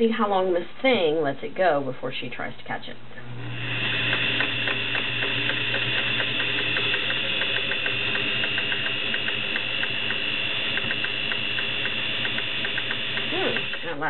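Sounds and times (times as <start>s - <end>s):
sewing machine motor whine: 3.3s - 14.0s
sewing needle tapping: 4.1s - 14.0s.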